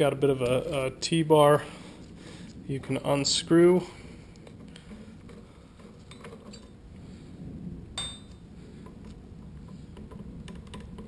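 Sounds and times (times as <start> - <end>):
sharp metallic clink: 8.0 - 8.4.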